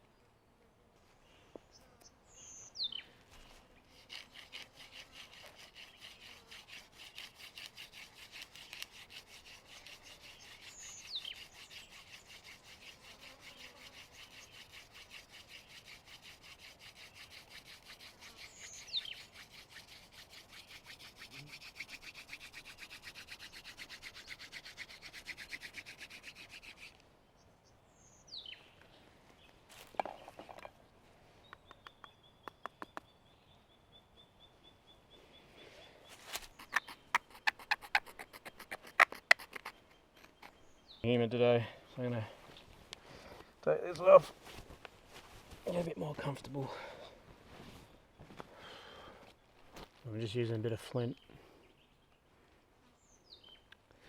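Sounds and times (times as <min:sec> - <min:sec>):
stone flake scraping wood: 0:03.3 - 0:27.0, 0:36.1 - 0:40.8.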